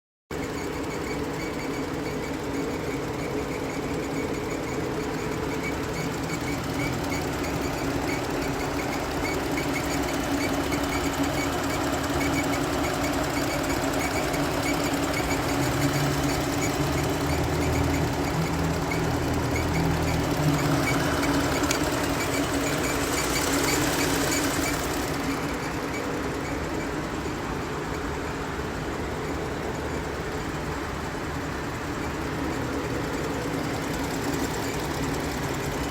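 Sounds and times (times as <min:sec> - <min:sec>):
fast even ticking: 0:00.5 - 0:27.3
car engine hum: 0:15.0 - 0:26.2.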